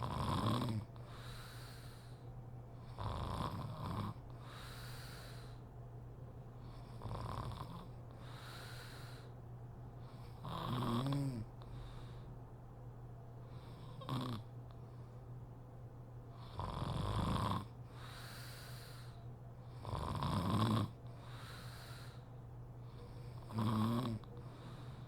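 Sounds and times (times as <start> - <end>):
woman snoring: 0.0 - 2.0, 3.0 - 5.5, 6.9 - 9.2, 10.4 - 11.5, 13.7 - 14.5, 16.4 - 17.7, 19.8 - 21.0, 23.3 - 24.3.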